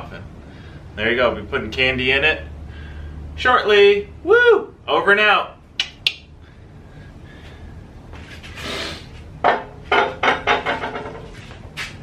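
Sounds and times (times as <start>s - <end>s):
hard objects knocking together: 9.4s - 11.5s.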